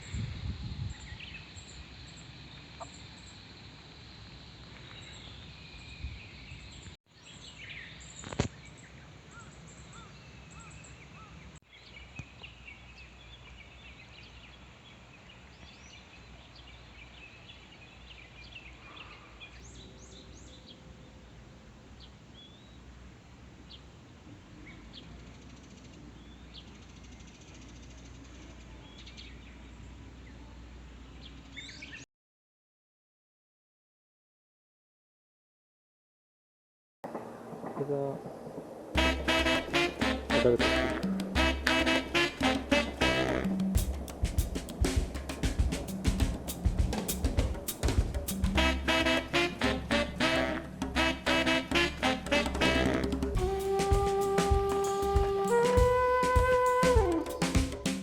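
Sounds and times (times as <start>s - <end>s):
birds chirping: 0.0s - 21.4s, 39.0s - 58.0s
outdoor background hiss: 0.0s - 32.0s, 37.1s - 58.0s.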